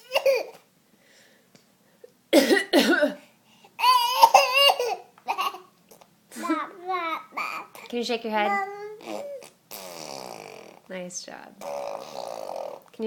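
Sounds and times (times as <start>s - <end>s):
baby imitation coughs: 0.0s - 0.6s, 2.4s - 3.2s, 3.8s - 5.7s, 9.0s - 10.5s.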